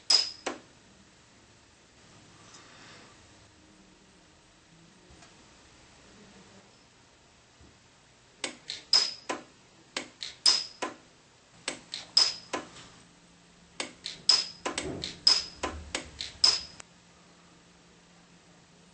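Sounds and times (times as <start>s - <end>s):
micro-welder sharp snaps: 0.1s - 0.6s, 8.4s - 11.0s, 11.6s - 12.6s, 13.8s - 16.9s.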